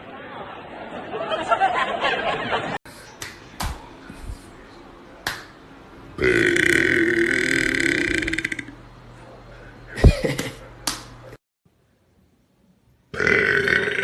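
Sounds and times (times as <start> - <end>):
man burping: 6.2 - 8.8, 13.1 - 14.0.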